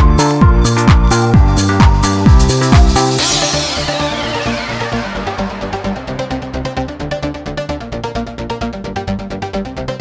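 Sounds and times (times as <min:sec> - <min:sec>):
steady kick drum: 0:00.0 - 0:08.0
electronic dance music: 0:00.0 - 0:08.3
sustained synth notes: 0:02.3 - 0:08.4.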